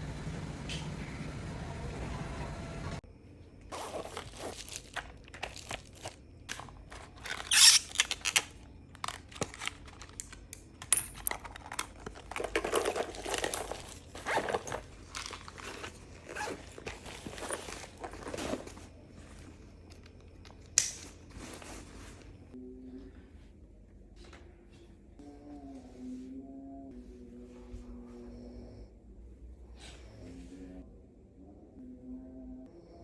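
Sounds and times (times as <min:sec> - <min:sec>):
rustling and crinkling: 0:03.7 - 0:10.5, 0:11.2 - 0:22.6.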